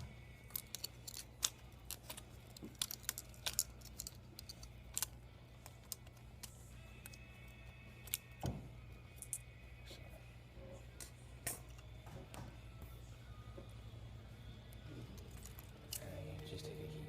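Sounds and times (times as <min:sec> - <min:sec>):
steady low hum: 0:00.0 - 0:17.0
small parts and tools clicking: 0:00.3 - 0:08.4, 0:09.1 - 0:09.5, 0:14.7 - 0:16.2.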